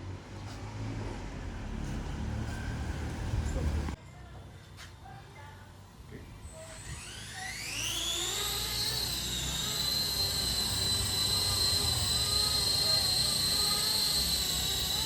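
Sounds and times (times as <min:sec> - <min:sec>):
electric motor whining: 0:06.5 - 0:15.0.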